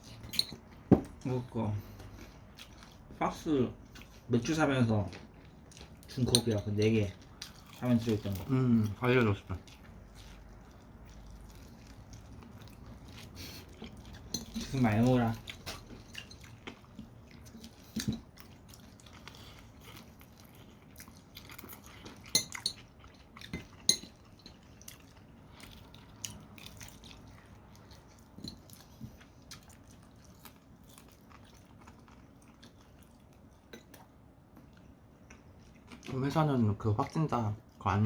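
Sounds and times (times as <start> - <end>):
cutlery and dishes clinking: 0.2 - 0.6
chewing: 1.8 - 3.2, 5.0 - 36.2.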